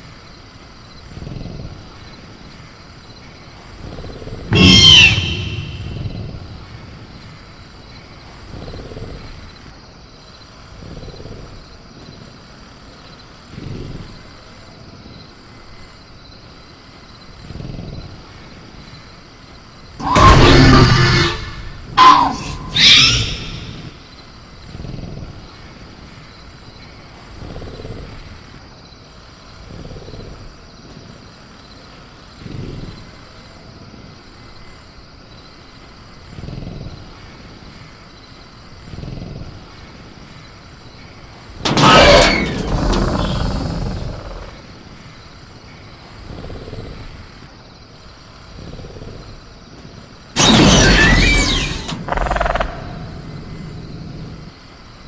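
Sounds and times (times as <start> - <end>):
faint crickets: 0.0 - 55.0
jungle background: 0.0 - 55.0
raptor cry: 4.5 - 6.6, 20.0 - 24.0, 41.7 - 44.6, 50.4 - 53.3
loud crash: 4.5 - 6.9, 41.7 - 44.4, 50.4 - 53.4.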